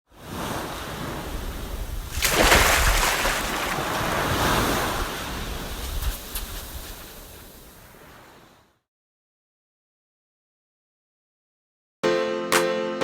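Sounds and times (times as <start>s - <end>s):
wind buffeting microphone: 0.4s - 8.3s
water sloshing and splashing: 2.0s - 5.6s.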